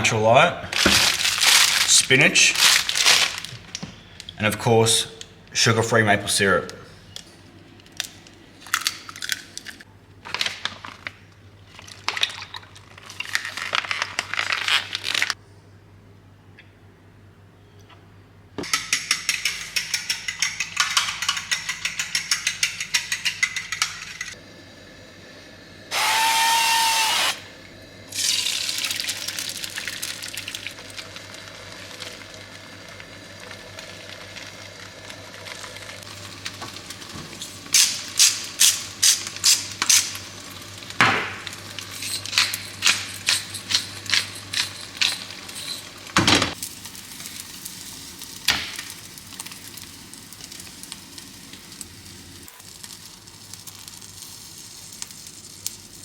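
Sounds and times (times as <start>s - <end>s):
loud whirring: 25.9s - 27.5s.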